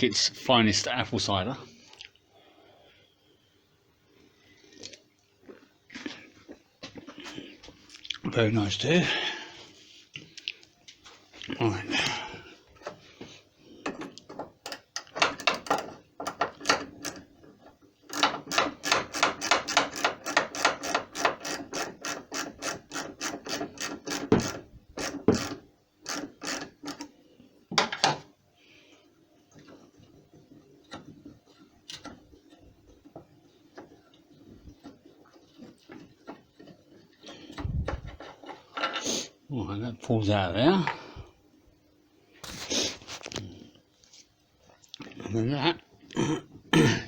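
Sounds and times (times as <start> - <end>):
hand ratchet clicking: 18.1 - 27.1.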